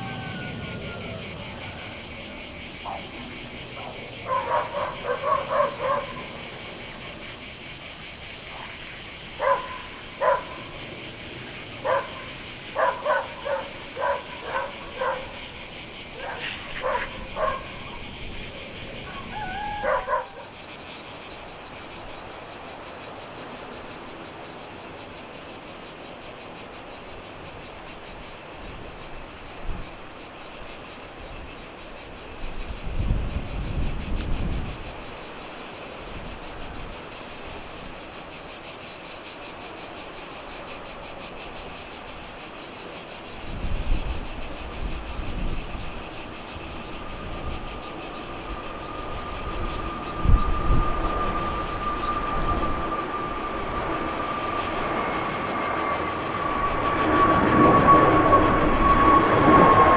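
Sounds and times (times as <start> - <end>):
chirring insects chorus: 0.0 - 59.9
higher-pitched insect: 0.0 - 59.9
dog barking: 3.8 - 6.4, 9.4 - 10.7, 11.8 - 15.4, 16.2 - 18.0, 19.1 - 20.5.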